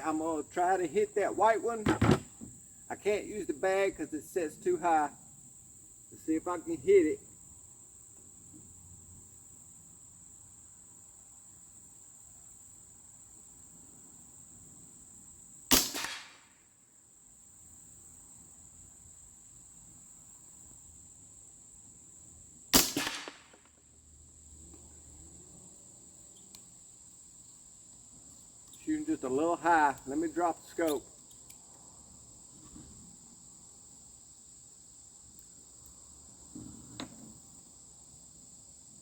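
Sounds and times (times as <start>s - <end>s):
air rifle shots: 15.7s - 16.5s, 22.7s - 23.7s.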